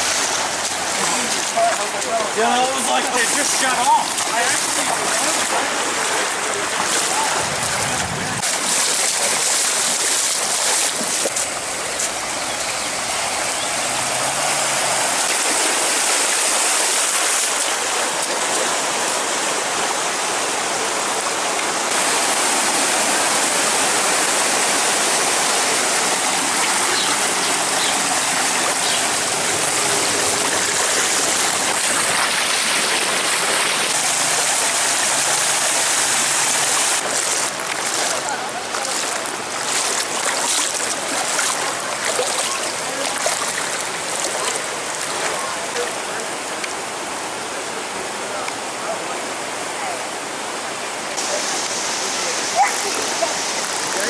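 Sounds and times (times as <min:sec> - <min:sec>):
floodwater rushing: 0:00.0 - 0:54.0.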